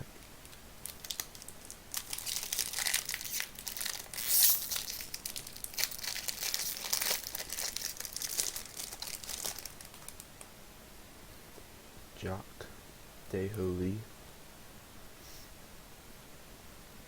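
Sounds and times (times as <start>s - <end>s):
foil wrapper crinkling: 0.2s - 10.5s.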